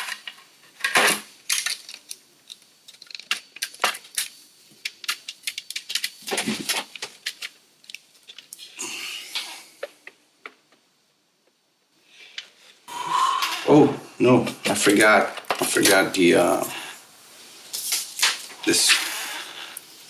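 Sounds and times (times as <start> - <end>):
plastic and metal parts clicking: 0.0 - 8.6.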